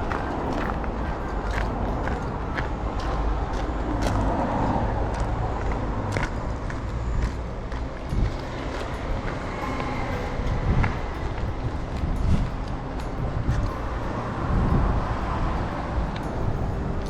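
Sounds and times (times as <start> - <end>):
road traffic rumble: 0.0 - 17.0.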